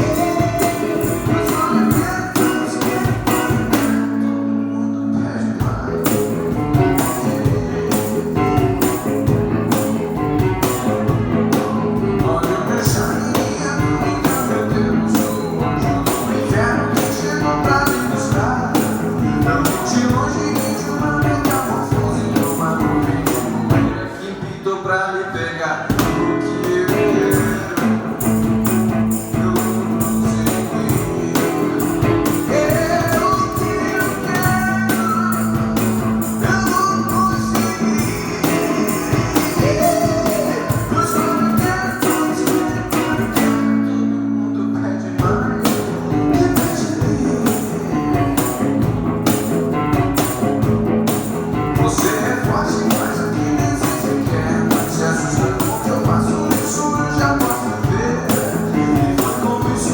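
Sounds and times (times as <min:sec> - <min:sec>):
drum beat: 0:00.0 - 0:04.2, 0:05.7 - 0:24.0, 0:25.9 - 0:43.7, 0:45.5 - 0:59.9
electric guitar: 0:00.0 - 0:59.9.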